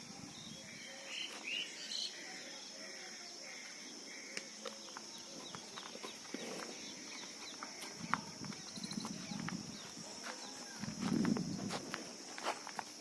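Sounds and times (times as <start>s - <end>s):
insects chirring: 0.0s - 13.0s
livestock shuffling steps: 4.8s - 13.0s.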